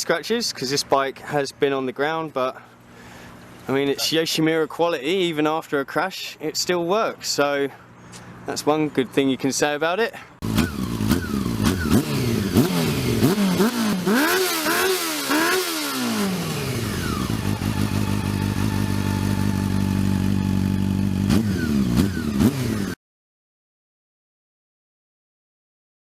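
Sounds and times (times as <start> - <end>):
motorcycle engine revving and idling: 10.4 - 23.0.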